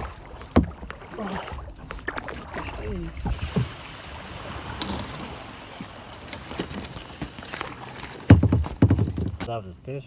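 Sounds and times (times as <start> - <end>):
water hissing: 3.1 - 8.2
light knocks on kayak: 8.3 - 9.5
loud thumps: 8.3 - 9.5.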